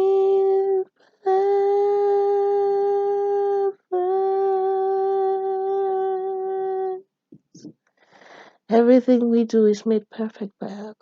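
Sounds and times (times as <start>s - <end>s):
person singing a long note: 0.0s - 7.0s.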